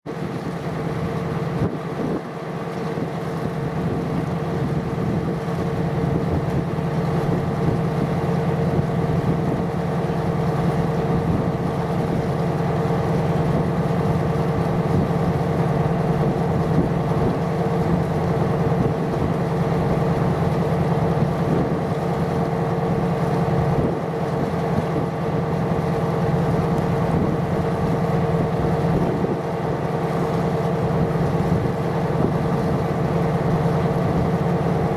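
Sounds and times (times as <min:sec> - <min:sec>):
ship engine droning: 0:00.1 - 0:34.9.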